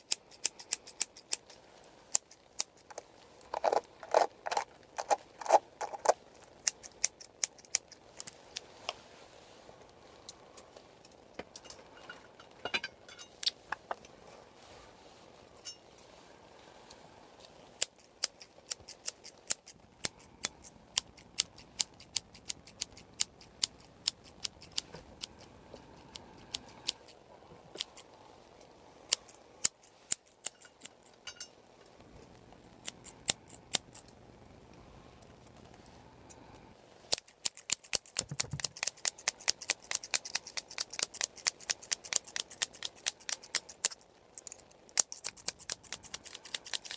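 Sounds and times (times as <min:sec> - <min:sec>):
scissors snipping: 0:00.0 - 0:01.5, 0:17.8 - 0:25.4, 0:37.1 - 0:46.9.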